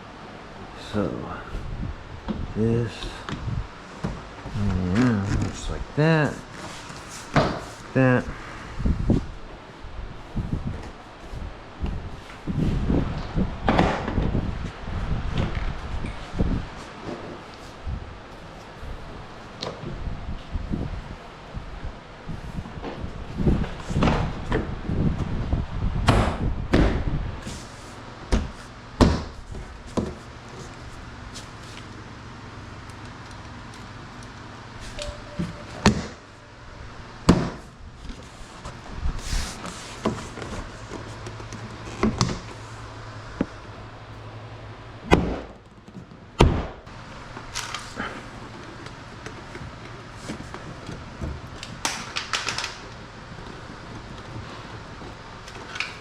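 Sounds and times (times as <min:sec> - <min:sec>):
steady low hum: 0:00.0 - 0:51.9.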